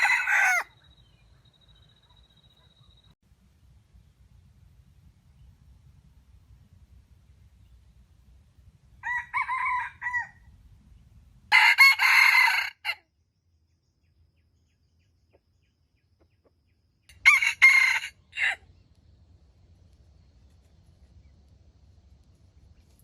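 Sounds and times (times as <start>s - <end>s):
roosters crowing: 0.0s - 0.8s, 9.0s - 10.5s, 11.5s - 13.0s, 17.1s - 18.7s.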